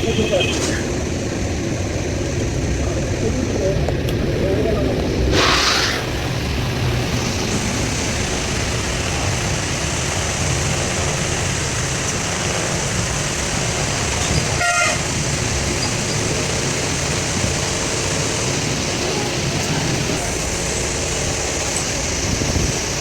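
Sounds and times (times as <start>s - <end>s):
vehicle engine and road noise: 0.0s - 23.0s
brief hiss: 5.3s - 6.1s
short horn toot: 14.6s - 15.1s.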